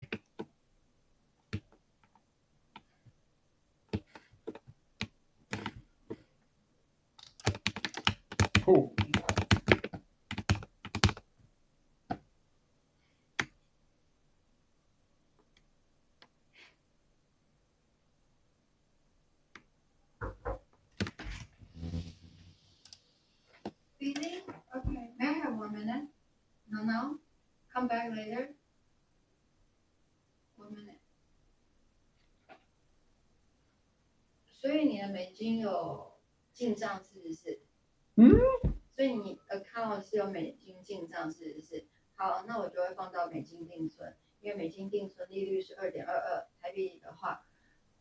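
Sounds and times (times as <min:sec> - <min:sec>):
mechanical keyboard keystrokes: 0:07.2 - 0:11.2.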